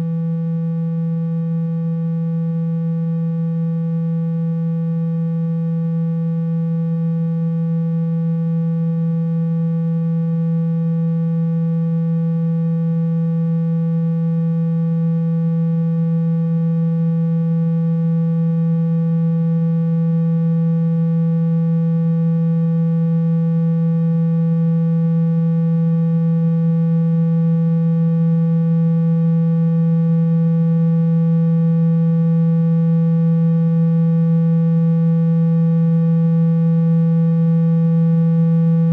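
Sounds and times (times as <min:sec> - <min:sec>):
low buzzy electronic tone: 0:00.0 - 0:38.9.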